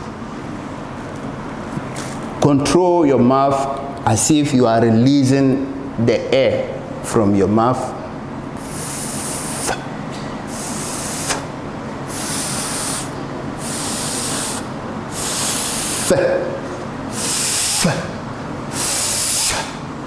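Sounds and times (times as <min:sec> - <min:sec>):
man making hissing f sound: 0:08.6 - 0:09.9, 0:10.5 - 0:11.5, 0:12.1 - 0:19.8.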